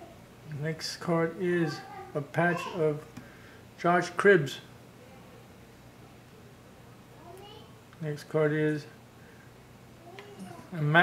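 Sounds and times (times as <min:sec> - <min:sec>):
faint background hiss: 0:00.0 - 0:11.0.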